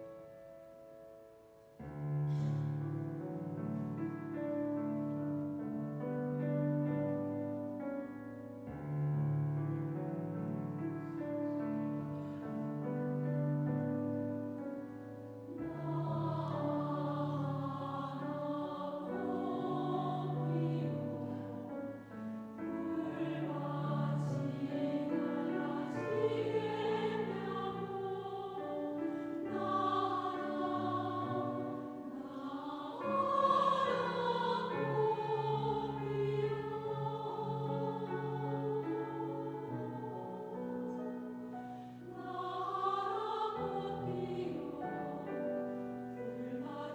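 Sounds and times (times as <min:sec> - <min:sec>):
piano accompaniment: 0:00.0 - 0:46.9
choir singing: 0:13.6 - 0:46.9.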